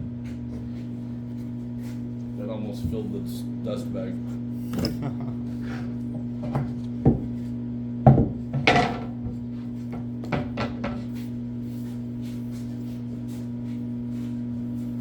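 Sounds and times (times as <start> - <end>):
steady machine hum: 0.0 - 15.0
wooden knocks and clatters: 8.1 - 9.3, 9.9 - 11.0.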